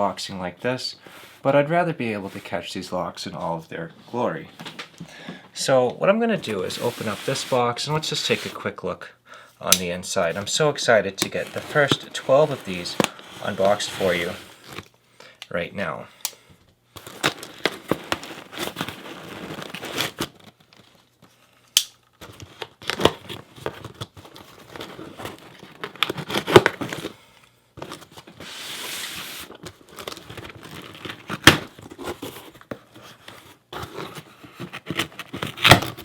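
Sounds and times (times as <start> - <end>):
cardboard crinkling and rustling: 6.3 - 8.6, 10.3 - 14.9, 17.0 - 21.6, 22.2 - 27.2, 27.8 - 36.0
packing tape tearing: 17.0 - 20.8, 21.7 - 27.1, 28.8 - 32.5, 33.8 - 36.0.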